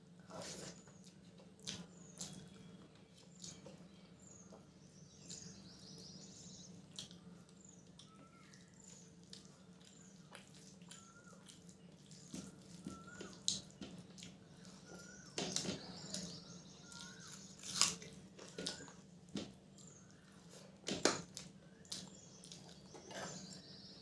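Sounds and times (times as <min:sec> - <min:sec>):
low steady hum: 0:00.0 - 0:24.0
chewing mouth sounds: 0:09.2 - 0:14.8.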